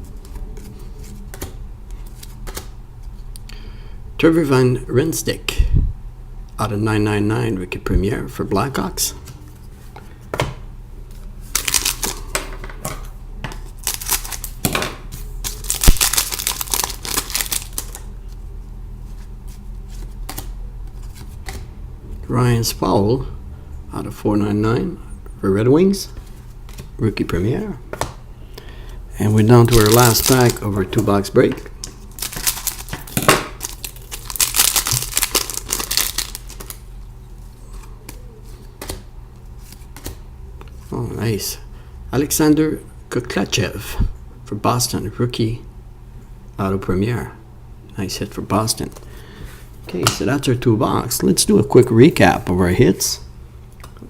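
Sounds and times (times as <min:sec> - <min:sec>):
cards flicking and rustling: 0:00.2 - 0:02.7, 0:11.1 - 0:12.4, 0:13.5 - 0:18.1, 0:19.1 - 0:21.7, 0:29.6 - 0:31.1, 0:31.8 - 0:36.8, 0:37.8 - 0:40.2.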